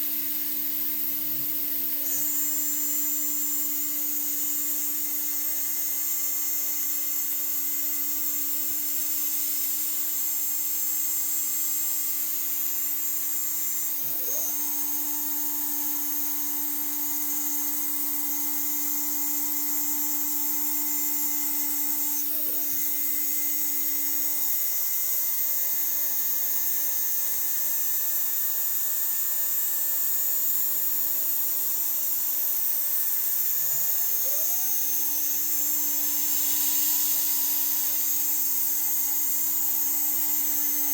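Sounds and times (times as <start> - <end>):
milling machine spindle whine: 0.0 - 40.9
sweeping whine of machine axes: 0.1 - 5.0, 13.6 - 25.5, 31.8 - 40.9.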